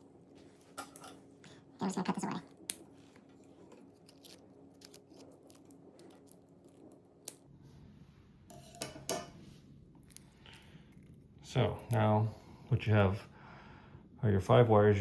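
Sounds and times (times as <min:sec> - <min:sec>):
scissors snipping: 0:03.7 - 0:07.4.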